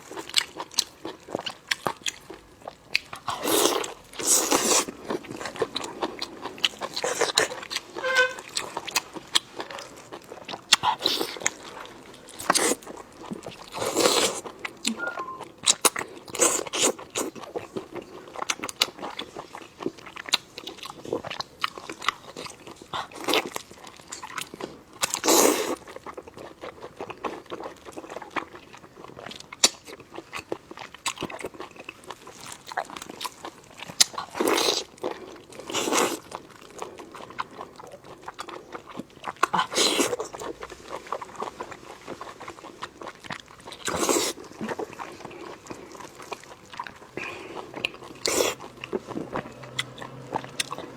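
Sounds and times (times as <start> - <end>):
squeaking guts: 8.0 - 8.6
wet chewing clicks: 32.6 - 50.9.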